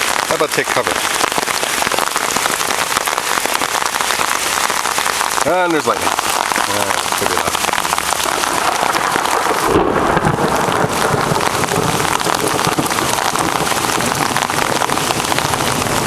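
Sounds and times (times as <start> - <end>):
rain pattering on an umbrella: 0.0 - 16.0
low thunder rumble: 7.0 - 16.0.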